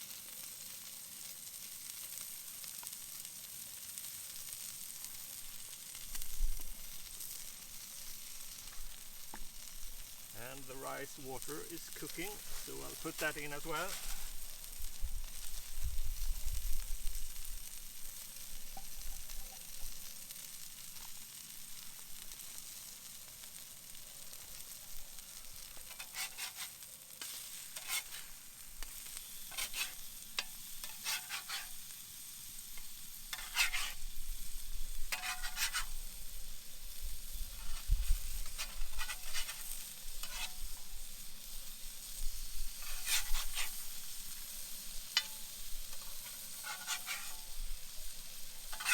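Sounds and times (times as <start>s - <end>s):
chicken sizzling in a pan: 0.0s - 48.9s
utensil scraping a pan: 10.4s - 14.5s, 25.6s - 36.7s, 37.3s - 41.2s, 42.3s - 48.9s.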